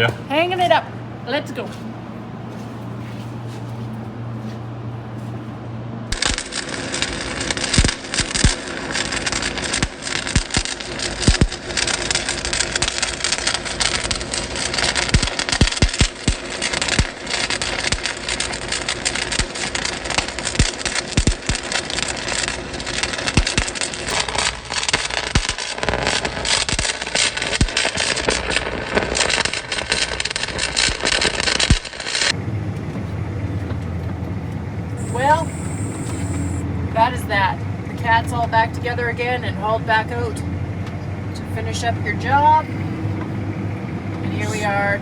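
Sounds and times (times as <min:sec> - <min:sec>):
dozer engine running: 0:00.0 - 0:15.6, 0:32.1 - 0:45.0
low steady hum: 0:32.3 - 0:45.0.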